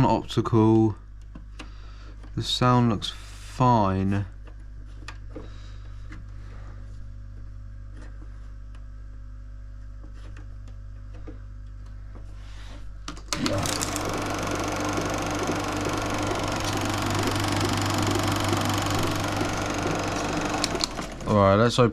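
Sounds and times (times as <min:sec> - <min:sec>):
low electrical hum: 0:00.0 - 0:21.9
projector running with rattle: 0:13.0 - 0:21.9.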